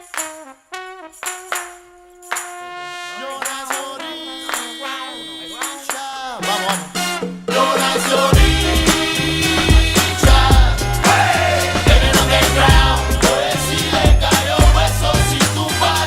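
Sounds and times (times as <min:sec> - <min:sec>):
sharp percussion hits: 0:06.9 - 0:15.6.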